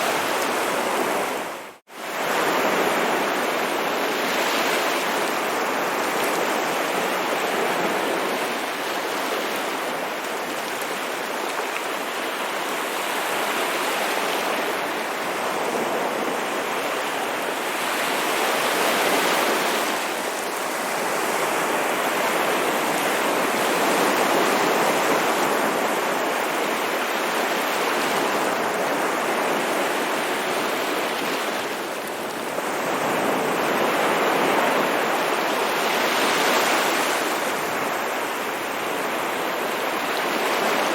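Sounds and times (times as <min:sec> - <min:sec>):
ocean surf washing onto shore: 0:00.0 - 0:40.9.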